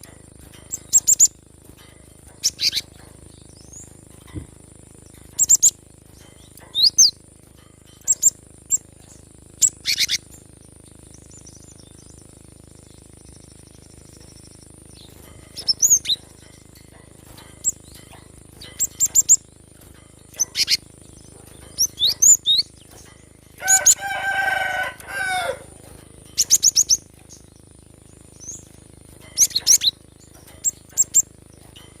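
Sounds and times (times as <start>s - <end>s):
bird chirping: 0.0s - 7.2s, 7.8s - 24.0s, 25.3s - 32.0s
rooster crowing: 23.6s - 26.0s.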